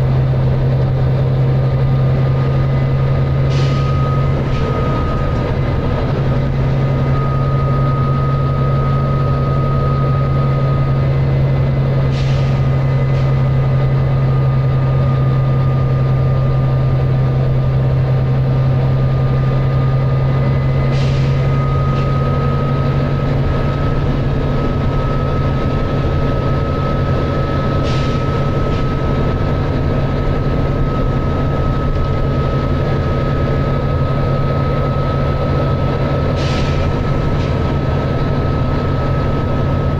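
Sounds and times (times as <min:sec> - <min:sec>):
bus engine low drone: 0:00.0 - 0:39.9
high whine: 0:00.0 - 0:39.9.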